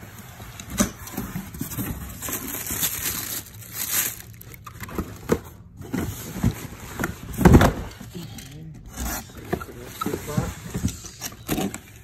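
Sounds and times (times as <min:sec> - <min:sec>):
paper crinkling and rustling: 0:01.1 - 0:07.3.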